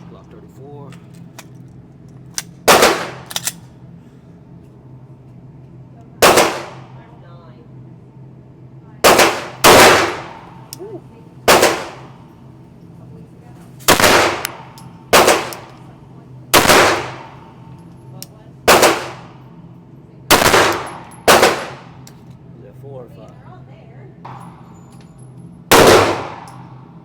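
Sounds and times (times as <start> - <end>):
pistol shots with echo: 2.7 - 3.5, 6.2 - 6.9, 9.0 - 10.6, 11.5 - 12.2, 13.9 - 15.8, 16.5 - 17.6, 18.7 - 19.4, 20.3 - 22.0, 25.7 - 26.8.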